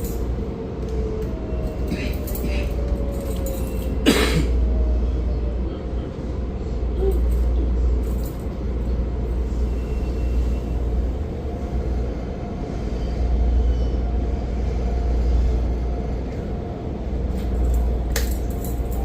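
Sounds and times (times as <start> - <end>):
electric train rumbling: 0.0 - 19.0.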